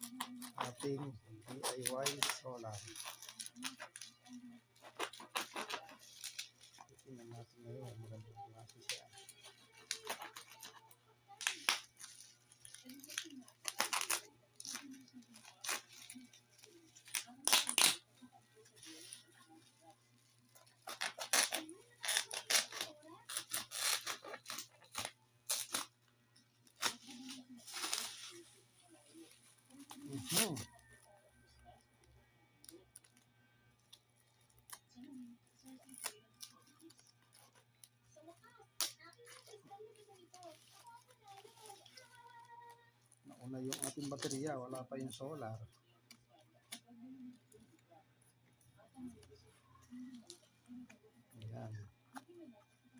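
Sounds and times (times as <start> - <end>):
packaging tearing: 0.0 - 7.0, 8.2 - 26.0, 26.6 - 30.8, 38.8 - 42.8, 43.4 - 45.1.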